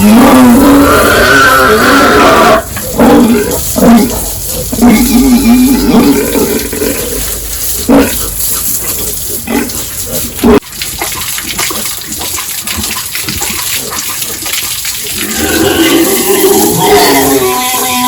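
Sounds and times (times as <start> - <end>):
pigs squealing: 0.0 - 18.0
running water: 3.6 - 18.0.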